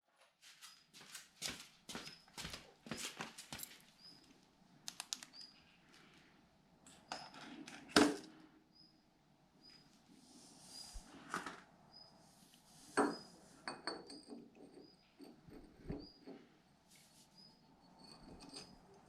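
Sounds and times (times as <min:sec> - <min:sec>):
faint high chirps: 0:08.7 - 0:09.9.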